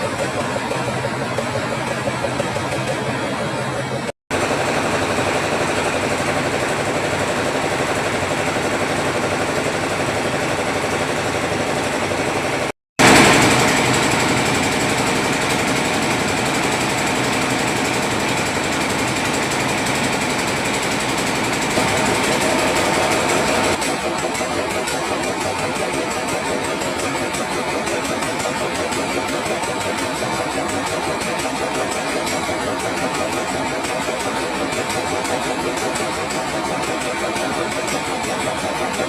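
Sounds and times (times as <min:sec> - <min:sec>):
rice milling machine running: 0:04.3 - 0:24.0.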